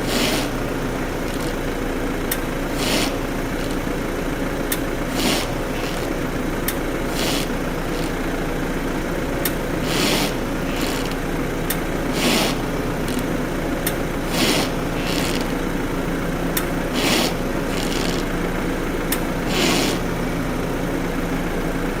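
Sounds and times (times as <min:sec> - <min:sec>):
car engine running: 0:00.0 - 0:22.0
wheel ticking and scraping: 0:00.0 - 0:22.0.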